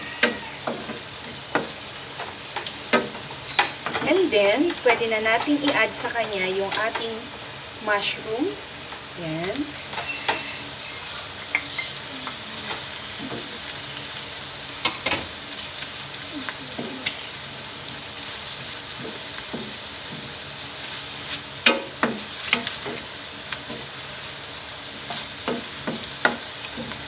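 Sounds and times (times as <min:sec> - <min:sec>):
vegetables sizzling in frying pan: 0:00.0 - 0:27.0
utensil clicking against pan: 0:00.2 - 0:07.2, 0:21.3 - 0:24.0, 0:25.0 - 0:27.0.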